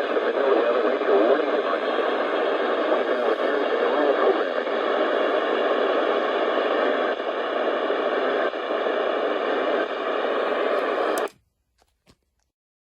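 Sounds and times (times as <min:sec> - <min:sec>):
radio static hiss: 0:00.0 - 0:11.3.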